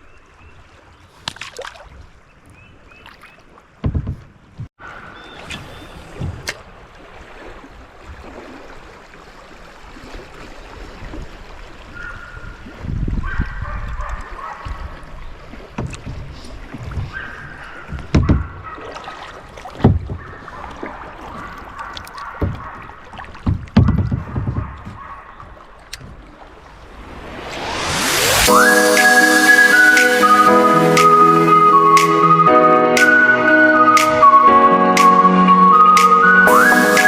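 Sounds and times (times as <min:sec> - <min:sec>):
kayak knocking: 0:03.8 - 0:04.7, 0:15.4 - 0:26.5
fast river rushing: 0:26.5 - 0:37.0.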